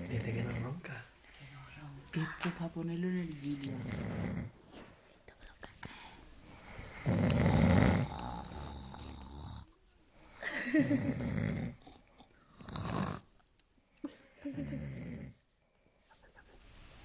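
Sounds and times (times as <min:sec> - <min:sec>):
man snoring loudly: 0:06.8 - 0:09.7, 0:10.9 - 0:11.8, 0:12.6 - 0:13.3, 0:14.6 - 0:15.4.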